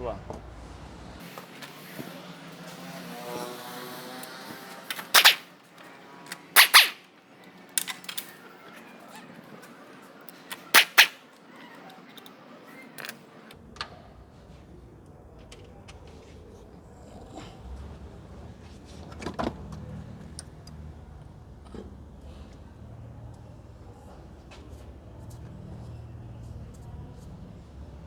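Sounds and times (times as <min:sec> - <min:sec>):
small clicks: 0:04.2 - 0:07.1, 0:10.3 - 0:13.2.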